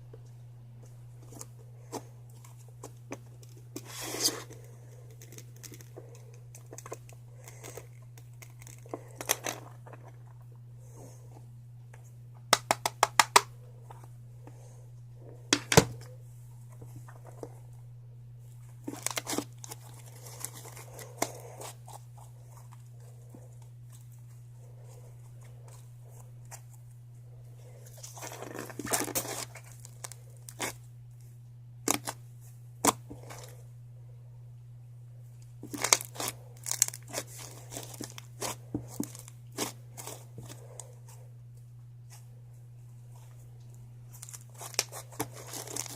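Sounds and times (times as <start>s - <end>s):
steady low hum: 0.0s - 45.9s
slime squished by hand: 35.6s - 40.8s.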